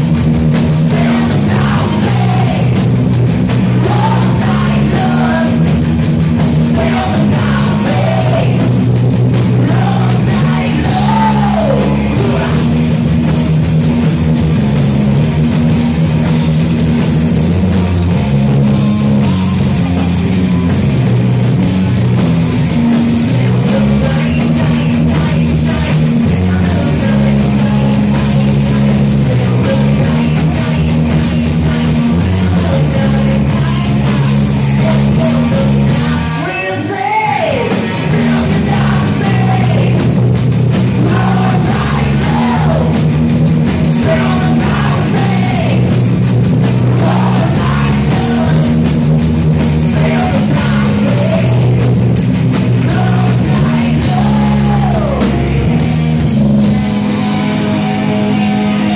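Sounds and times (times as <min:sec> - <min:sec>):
rock band playing live: 0:00.0 - 0:58.9
person singing: 0:00.8 - 0:02.9, 0:03.7 - 0:05.7, 0:06.6 - 0:08.8, 0:09.6 - 0:12.8, 0:22.5 - 0:40.1, 0:41.0 - 0:43.0, 0:44.0 - 0:46.0, 0:46.8 - 0:48.8, 0:49.6 - 0:51.8, 0:52.8 - 0:55.4.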